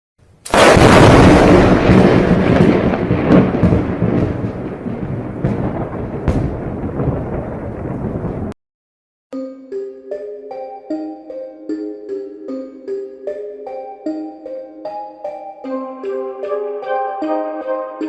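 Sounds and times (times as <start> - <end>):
thunder crack and rumble: 0.5 - 8.6.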